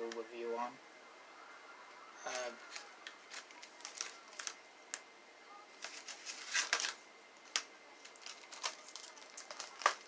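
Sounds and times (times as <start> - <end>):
candy packaging crinkling: 2.4 - 5.0, 5.8 - 10.0.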